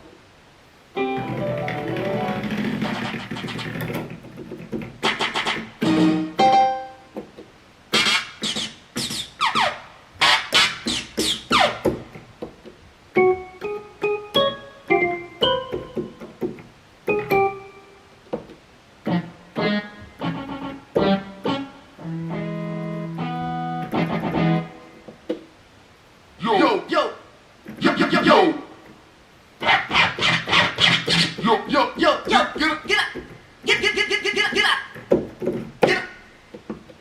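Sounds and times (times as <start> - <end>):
electronic keyboard sampled hits: 5.0 - 7.2, 13.2 - 16.4.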